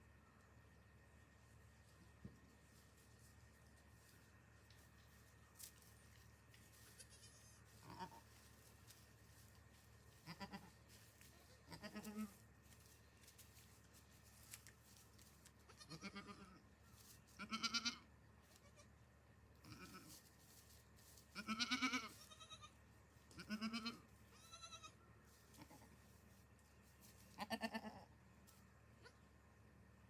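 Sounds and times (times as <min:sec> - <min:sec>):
goats bleating: 0:06.9 - 0:08.3, 0:10.1 - 0:10.8, 0:11.5 - 0:12.4, 0:15.7 - 0:16.6, 0:17.4 - 0:18.0, 0:21.4 - 0:26.0, 0:27.4 - 0:28.1.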